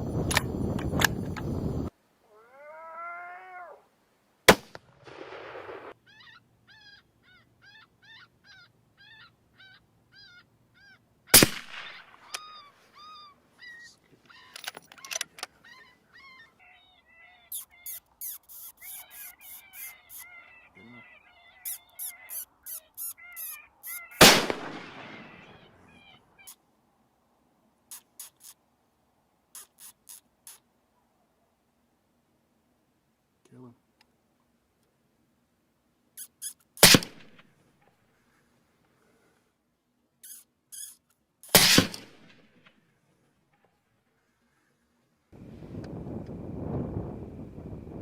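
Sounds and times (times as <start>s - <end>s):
wavering cry: 2.2s - 3.9s, 6.0s - 11.0s, 12.2s - 24.3s
high repeated yelping cries: 2.3s - 3.8s, 5.9s - 26.6s, 29.5s - 30.6s, 36.2s - 37.4s, 40.2s - 42.0s
rifle shots: 4.5s - 5.9s, 11.4s - 12.3s, 24.2s - 25.6s, 36.8s - 37.4s, 41.5s - 42.4s.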